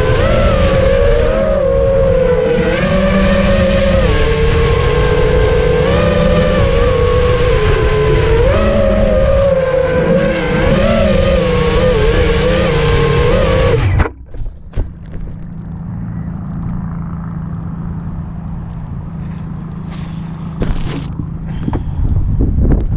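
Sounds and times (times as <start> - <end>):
motor whining: 0.0 - 14.2
low hum: 0.0 - 22.9.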